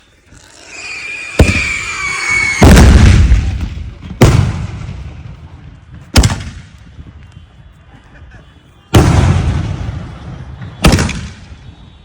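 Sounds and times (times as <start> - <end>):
firework whistling hiss: 0.4 - 3.5
firework crack: 0.6 - 7.0, 8.9 - 11.8.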